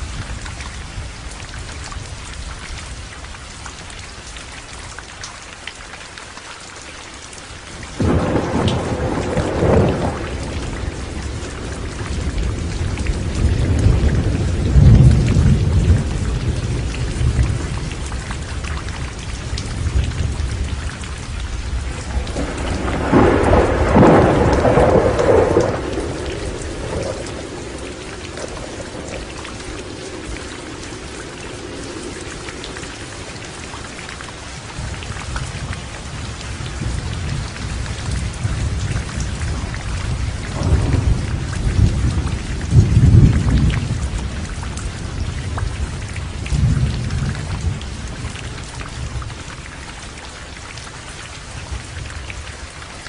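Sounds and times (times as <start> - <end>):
heavy rain: 0.0 - 53.0
loud thunderclap: 8.0 - 18.1, 21.8 - 33.7, 36.8 - 45.8, 46.4 - 48.3
thunder rumbling: 8.0 - 49.4.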